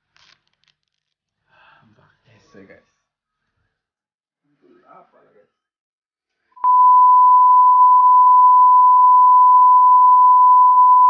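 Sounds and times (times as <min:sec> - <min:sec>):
electronic beep tone: 0:06.6 - 0:11.0.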